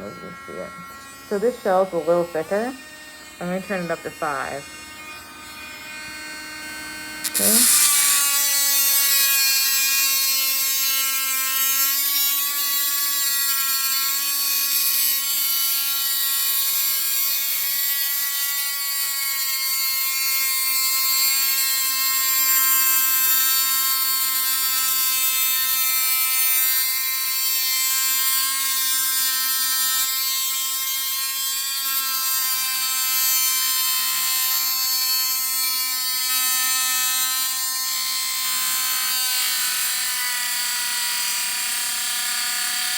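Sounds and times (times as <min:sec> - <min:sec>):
rotary tool motor whining: 0:00.0 - 0:18.3.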